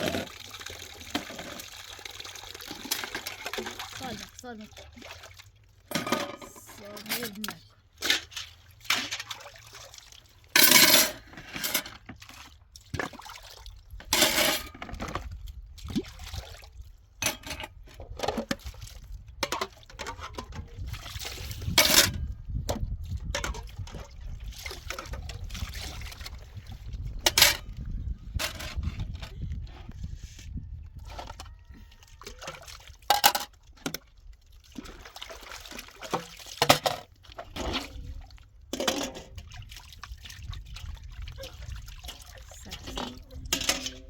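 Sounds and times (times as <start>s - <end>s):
water pouring: 0.0s - 17.4s, 23.0s - 29.1s, 31.1s - 44.0s
things clinking: 5.9s - 7.6s.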